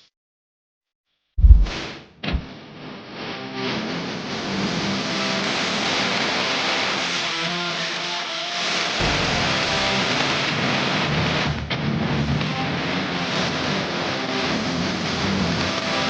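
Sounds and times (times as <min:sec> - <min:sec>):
dense rushing noise: 0:01.4 - 0:01.8
heavy bass: 0:01.4 - 0:02.5, 0:09.0 - 0:10.5.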